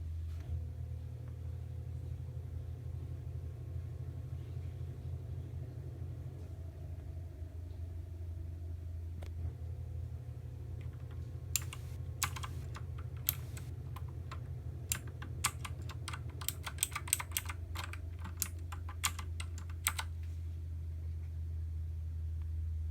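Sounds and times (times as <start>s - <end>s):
steady low hum: 0.0s - 22.9s
mechanical keyboard key clicks: 10.8s - 20.1s.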